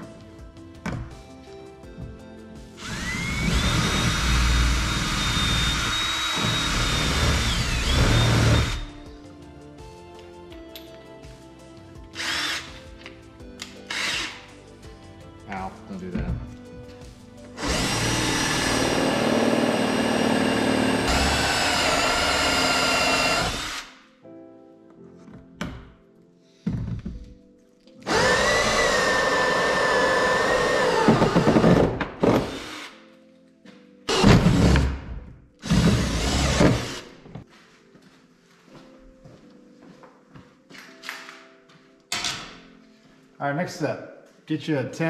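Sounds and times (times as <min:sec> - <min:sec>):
power drill whining: 0:02.8 - 0:09.0, 0:12.2 - 0:12.8, 0:13.9 - 0:14.4, 0:17.6 - 0:23.9, 0:28.1 - 0:32.9, 0:35.6 - 0:37.1.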